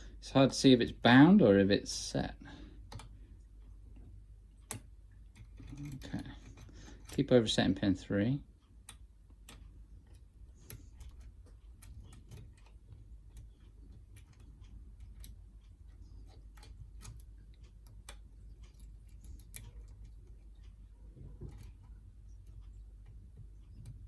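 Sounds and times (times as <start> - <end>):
low steady hum: 0.0 - 24.0
lock pick clicking on pins: 2.9 - 3.1, 4.6 - 7.3, 8.8 - 20.3.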